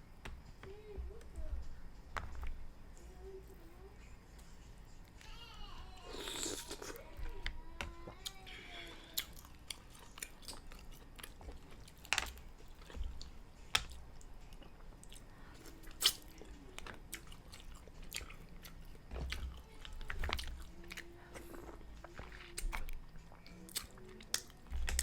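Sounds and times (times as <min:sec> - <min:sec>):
person chewing and lip-smacking: 0:06.1 - 0:07.1, 0:09.2 - 0:25.0.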